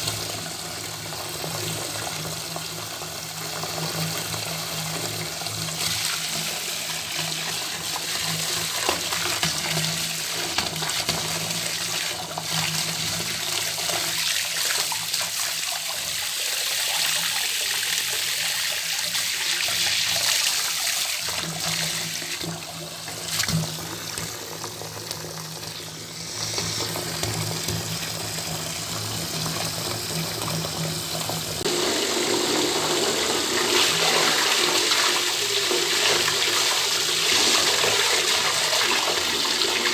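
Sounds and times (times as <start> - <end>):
tap water splashing into tub: 7.2 - 31.8.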